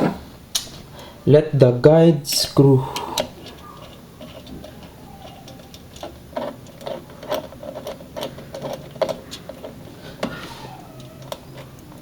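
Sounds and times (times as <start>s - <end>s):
metal parts clicking and tapping: 2.9s - 12.0s.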